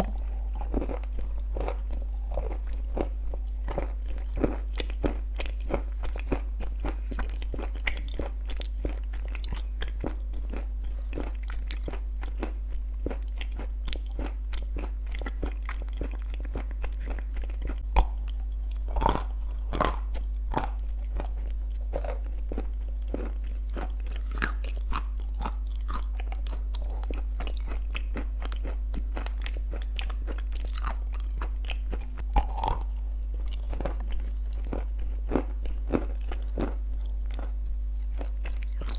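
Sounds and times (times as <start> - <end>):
crunching and chewing: 0.0 - 38.9
steady low hum: 0.0 - 38.9.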